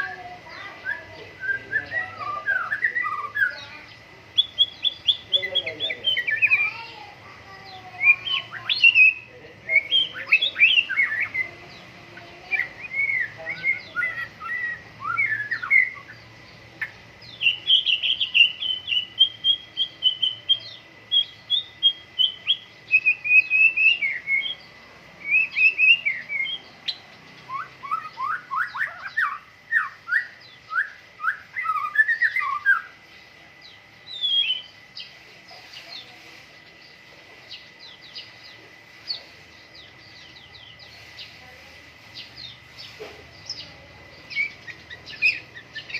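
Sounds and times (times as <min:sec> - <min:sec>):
songbird singing whistles: 0:00.8 - 0:03.6, 0:04.4 - 0:06.7, 0:08.0 - 0:11.5, 0:12.5 - 0:33.0, 0:34.1 - 0:35.1, 0:42.2 - 0:45.9.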